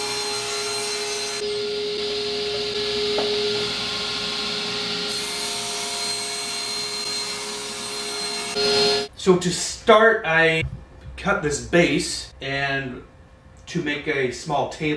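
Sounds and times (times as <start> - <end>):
cutter planing wood: 0.0 - 9.1.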